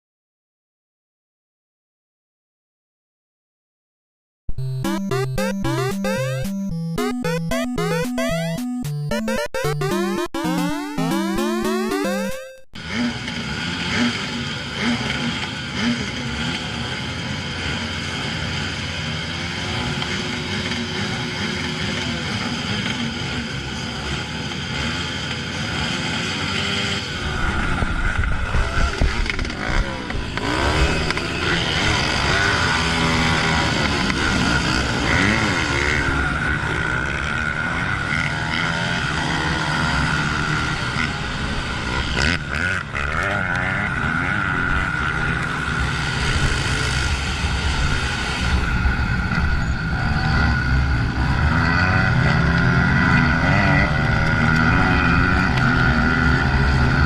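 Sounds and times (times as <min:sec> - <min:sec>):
motorcycle engine revving: 0:12.8 - 0:48.1.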